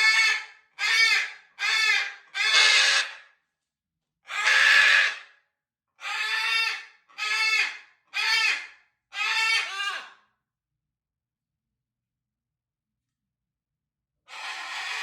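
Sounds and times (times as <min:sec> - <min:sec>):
macaws squawking: 0:00.8 - 0:03.2, 0:04.3 - 0:05.2.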